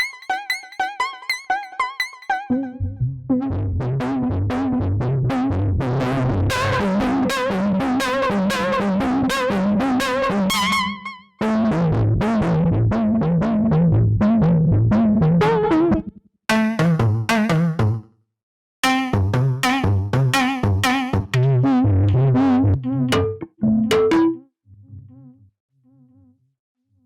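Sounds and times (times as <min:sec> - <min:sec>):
bouncing synth bass line: 0:00.0 - 0:18.0, 0:18.8 - 0:24.4
chiptune synthesizer lead notes: 0:23.1 - 0:24.4.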